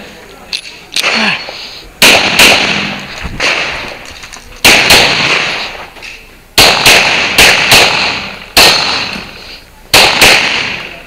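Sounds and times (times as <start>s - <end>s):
pistol shots with echo: 2.0s - 4.0s, 4.6s - 5.8s, 6.6s - 11.0s.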